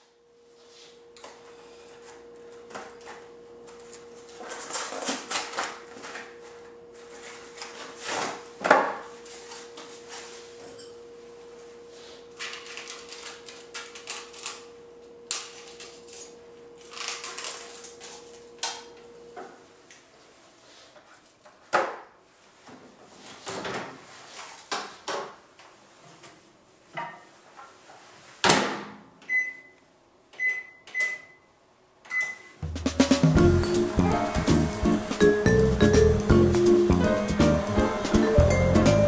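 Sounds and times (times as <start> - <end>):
microwave oven humming: 0.0 - 20.3, 29.3 - 39.0.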